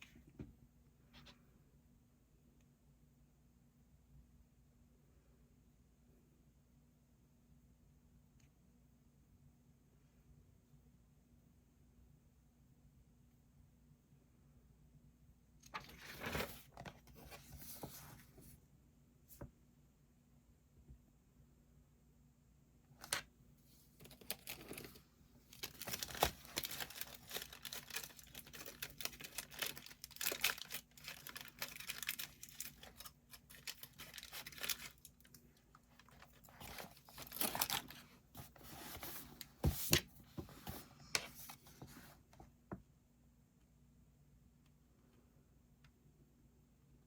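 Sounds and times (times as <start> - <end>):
crinkly material rustling: 23.0 - 42.2.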